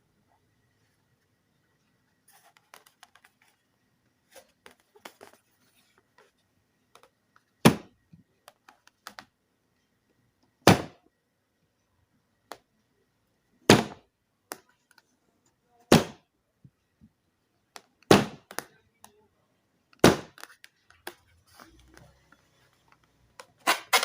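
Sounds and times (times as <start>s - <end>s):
loud sharp knocks: 18.1s - 18.4s.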